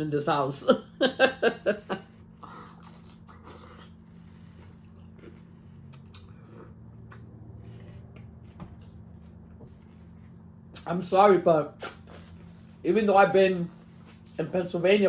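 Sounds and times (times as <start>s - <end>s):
person chewing food: 2.2s - 9.0s.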